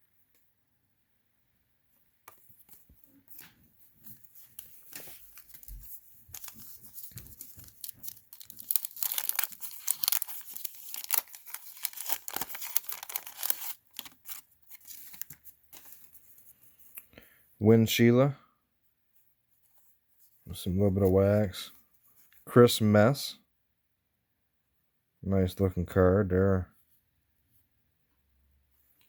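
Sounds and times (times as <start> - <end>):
paper wrapper tearing and crinkling: 4.3 - 16.2.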